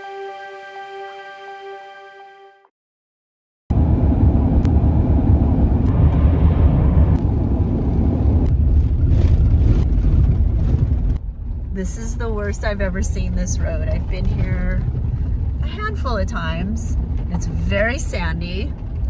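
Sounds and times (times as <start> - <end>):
truck rumbling on dirt road: 3.7 - 19.0
rattles and knocks: 13.5 - 16.2.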